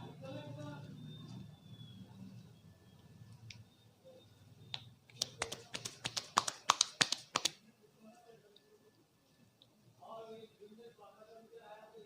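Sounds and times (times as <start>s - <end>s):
hands slapping during massage: 4.7s - 7.6s.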